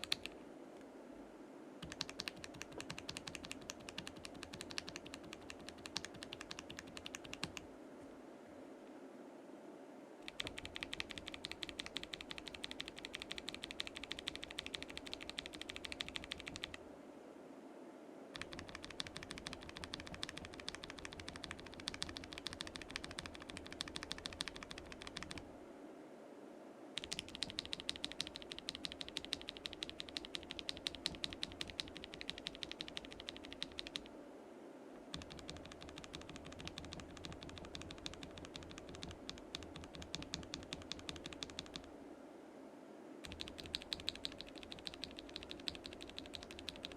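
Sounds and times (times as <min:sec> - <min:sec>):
mechanical keyboard typing: 0:00.0 - 0:00.4, 0:01.8 - 0:07.7, 0:10.2 - 0:16.8, 0:18.4 - 0:25.4, 0:27.0 - 0:34.1, 0:35.1 - 0:41.9, 0:43.2 - 0:46.9.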